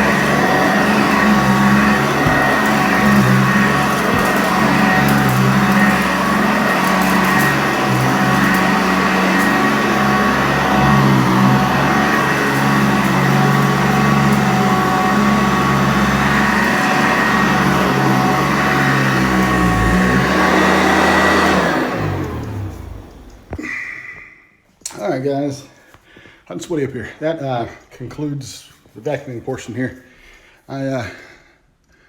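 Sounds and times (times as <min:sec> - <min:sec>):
vacuum cleaner running: 0:00.0 - 0:23.7.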